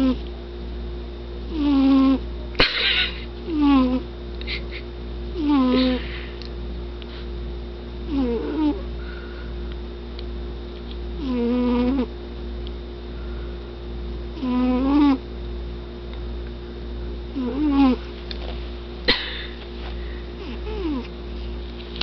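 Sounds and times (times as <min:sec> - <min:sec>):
cat snoring: 0:01.5 - 0:02.2, 0:03.5 - 0:04.0, 0:05.4 - 0:06.0, 0:08.1 - 0:08.8, 0:11.2 - 0:12.1, 0:14.4 - 0:15.2, 0:17.4 - 0:18.0, 0:20.4 - 0:21.1.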